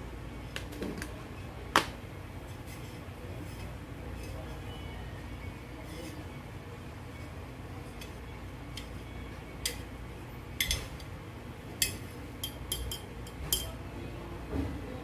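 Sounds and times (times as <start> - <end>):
low steady hum: 0.0 - 15.0
metal spoon clinking on glass: 7.9 - 9.9, 10.6 - 11.1, 11.8 - 13.8.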